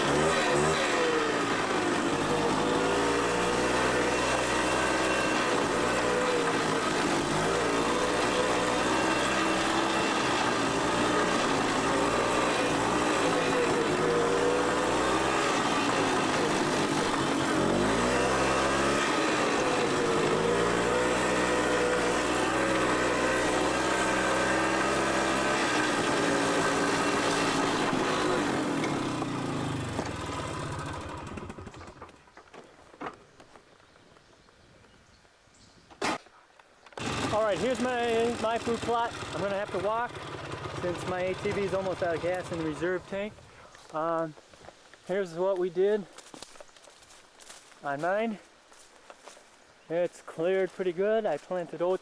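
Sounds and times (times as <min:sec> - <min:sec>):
atv engine running: 0:00.0 - 0:32.4, 0:36.9 - 0:44.3.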